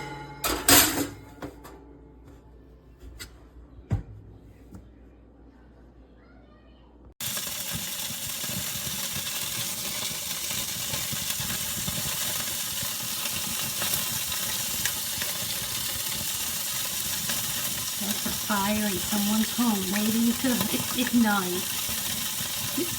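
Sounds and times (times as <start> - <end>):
food crackling and sizzling: 7.2 - 22.9.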